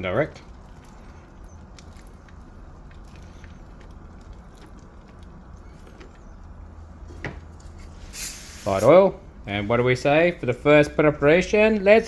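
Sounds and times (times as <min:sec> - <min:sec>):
faint crackles of meat grilling: 0:00.0 - 0:12.0
gas burners rumbling: 0:00.0 - 0:12.0.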